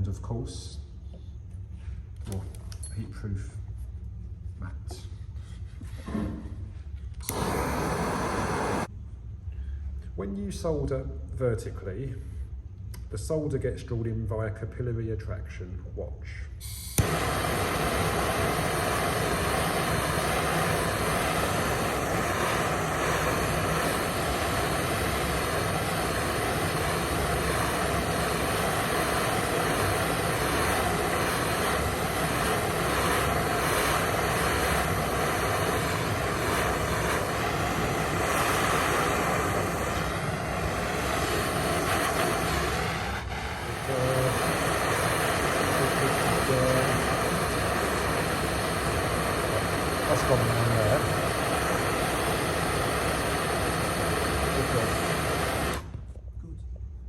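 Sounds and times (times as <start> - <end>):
blowtorch flame burning: 5.5 - 8.9, 16.6 - 56.2.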